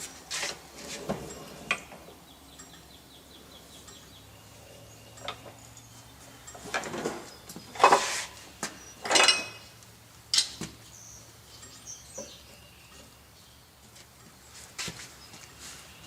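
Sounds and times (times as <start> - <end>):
steel tools clanking: 3.7 - 10.6.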